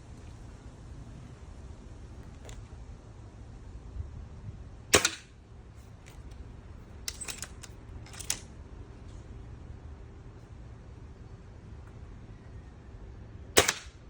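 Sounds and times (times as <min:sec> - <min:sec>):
air rifle firing: 0:04.9 - 0:05.3, 0:13.6 - 0:14.0.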